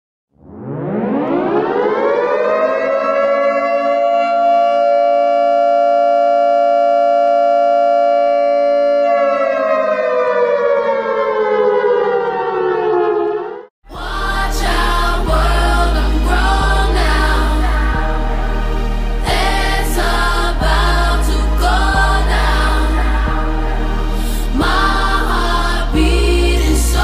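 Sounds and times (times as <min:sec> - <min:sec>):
siren wailing: 0:00.4 - 0:13.7.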